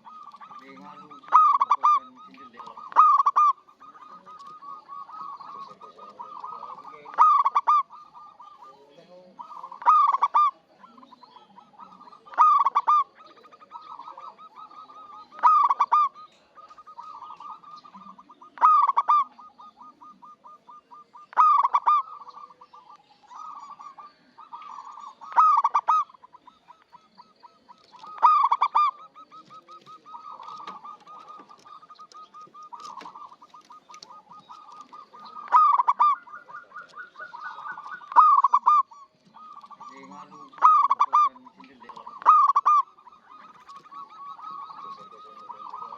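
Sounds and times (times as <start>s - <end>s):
dove cooing: 0.0s - 45.9s.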